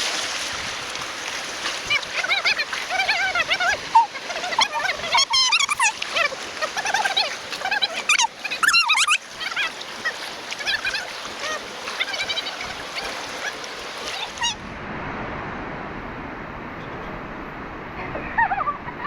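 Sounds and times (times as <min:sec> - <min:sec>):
steady even noise: 0:14.6 - 0:19.0.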